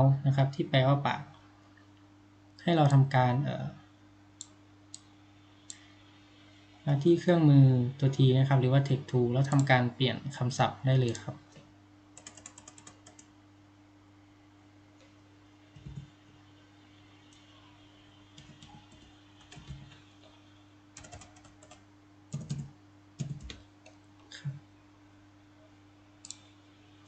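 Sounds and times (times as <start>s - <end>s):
faint electrical hum: 0.0s - 27.0s
typing on computer keyboard: 12.2s - 13.3s, 18.4s - 20.0s, 21.0s - 23.6s.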